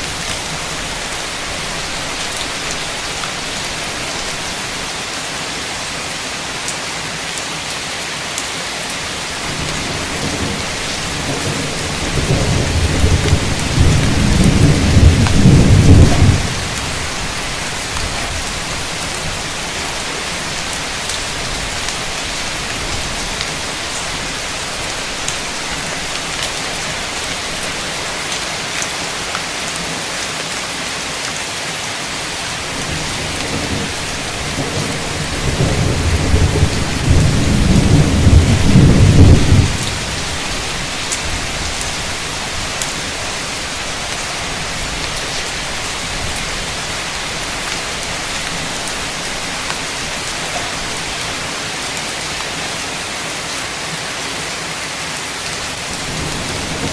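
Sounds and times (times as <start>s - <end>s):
heavy rain: 0.0s - 56.9s
thunder rumbling: 9.4s - 19.5s, 32.6s - 50.2s.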